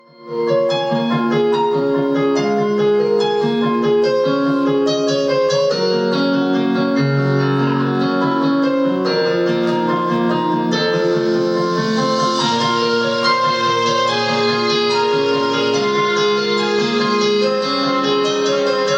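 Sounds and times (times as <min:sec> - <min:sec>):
keyboard piano chords and melody: 0:00.0 - 0:18.9.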